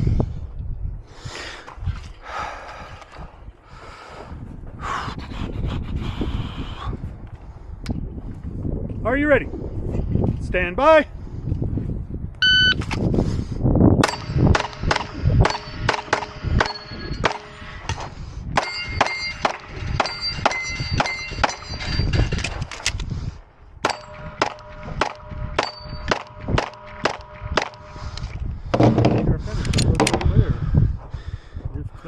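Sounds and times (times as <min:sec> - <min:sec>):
shot timer beep: 0:12.4 - 0:12.8
steel targets clanging: 0:14.0 - 0:14.5, 0:15.4 - 0:17.6, 0:18.6 - 0:22.6, 0:23.8 - 0:27.9
rapid pistol shots: 0:14.0 - 0:17.6, 0:18.6 - 0:21.6, 0:23.8 - 0:28.1.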